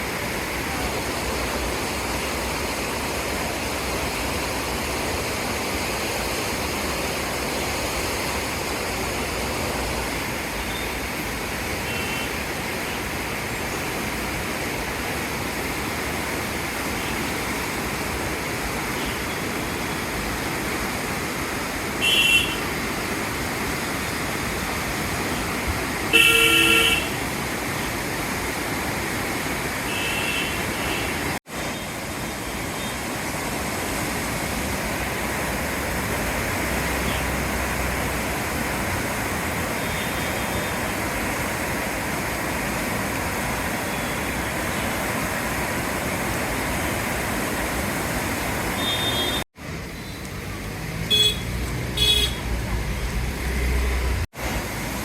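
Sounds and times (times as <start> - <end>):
rain hiss: 0.0 - 55.0
road traffic: 0.0 - 55.0
distant horn toots: 26.1 - 27.2, 48.7 - 49.4, 51.1 - 52.5.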